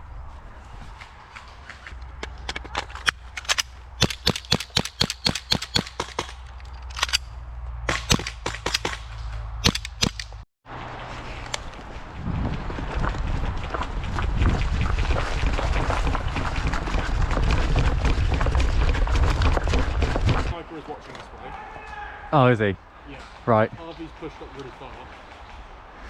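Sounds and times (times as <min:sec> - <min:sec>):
airsoft guns firing: 0:03.5 - 0:06.5, 0:07.9 - 0:10.4.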